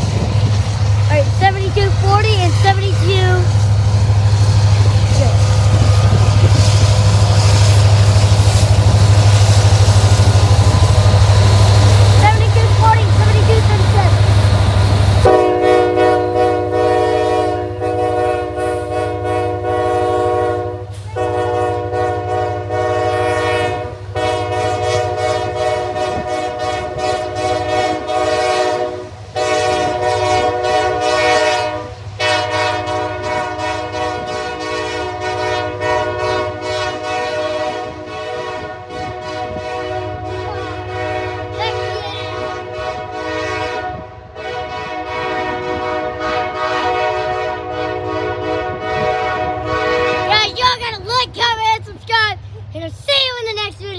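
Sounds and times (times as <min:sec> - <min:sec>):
freight train rumble: 0:00.0 - 0:53.9
locomotive air horn blasts: 0:15.2 - 0:50.3.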